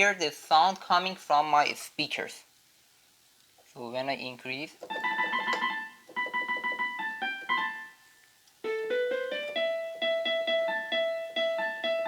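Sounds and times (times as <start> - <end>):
electronic keyboard quick notes: 4.9 - 8.0.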